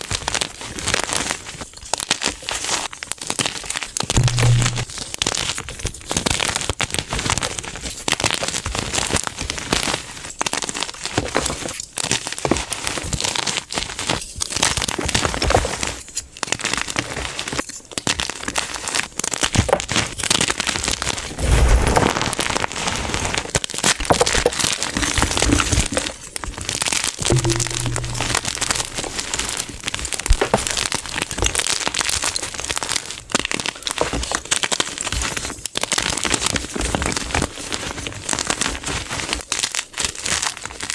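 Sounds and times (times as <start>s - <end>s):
heavy low thump: 4.2s - 4.9s, 27.3s - 29.0s.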